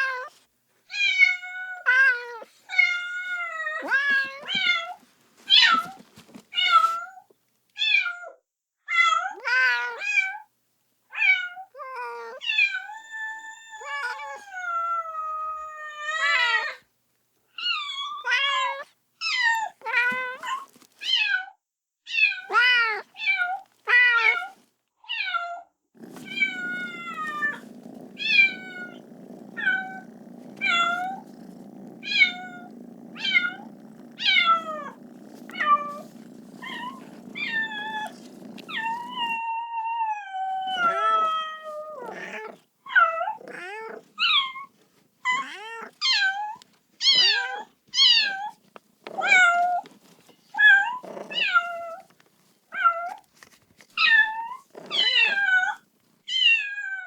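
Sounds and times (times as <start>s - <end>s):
kitten meowing: 11.2s - 16.6s, 26.0s - 39.5s, 40.4s - 44.6s, 54.0s - 56.7s.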